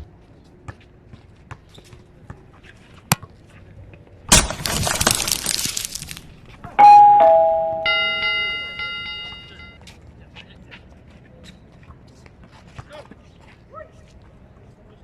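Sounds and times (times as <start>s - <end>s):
two-note ding-dong chime: 6.8s - 9.8s.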